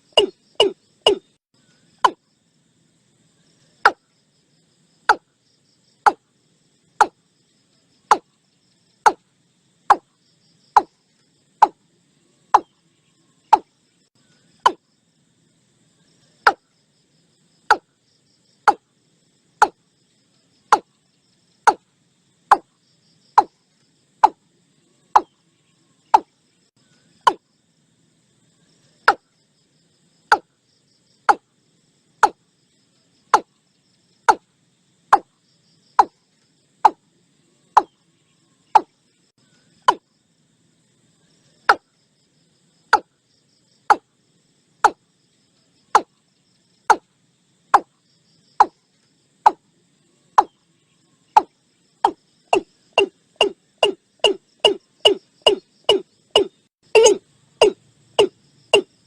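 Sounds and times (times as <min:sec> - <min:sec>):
bird calling hollow notes: 0:00.0 - 0:02.2, 0:08.0 - 0:08.4, 0:10.7 - 0:11.0, 0:11.6 - 0:11.8, 0:12.5 - 0:12.8, 0:13.4 - 0:13.8, 0:14.6 - 0:14.9, 0:17.7 - 0:17.9, 0:18.6 - 0:18.9, 0:19.6 - 0:19.8, 0:20.7 - 0:21.0, 0:21.7 - 0:21.9, 0:22.5 - 0:22.7, 0:24.2 - 0:24.4, 0:25.1 - 0:25.4, 0:26.1 - 0:26.3, 0:27.1 - 0:27.4, 0:29.0 - 0:29.3, 0:30.3 - 0:30.5, 0:38.7 - 0:39.0, 0:39.8 - 0:40.0, 0:45.9 - 0:46.2, 0:51.3 - 0:59.0
faint insect chirring: 0:00.0 - 0:59.0.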